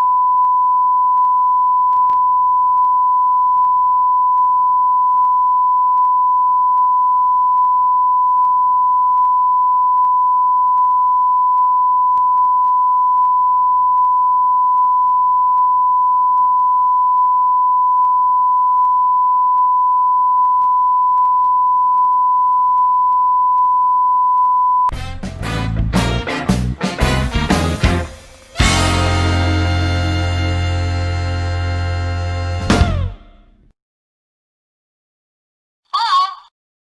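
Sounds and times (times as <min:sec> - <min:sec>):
swing music with brass: 0:24.9 - 0:33.1.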